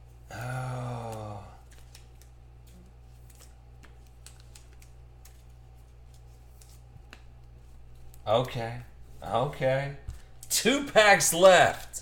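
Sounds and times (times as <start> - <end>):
low electrical hum: 0.0 - 12.0
trading cards sliding through hands: 1.6 - 9.5.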